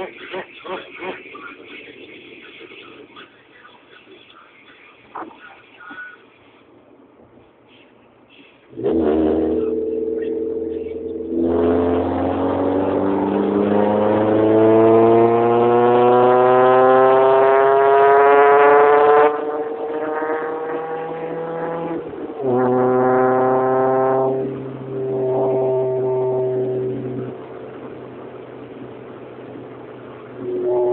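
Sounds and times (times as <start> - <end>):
car engine revving: 8.7 - 30.9.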